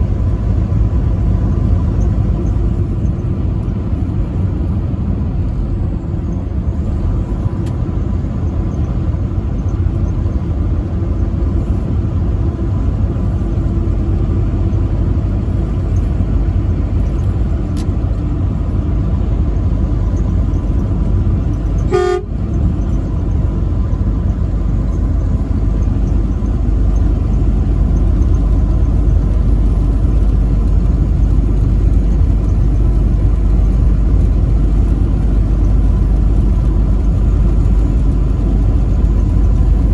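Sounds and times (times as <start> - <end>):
truck engine and road rumble: 0.0 - 39.9
truck horn toot: 21.8 - 22.5.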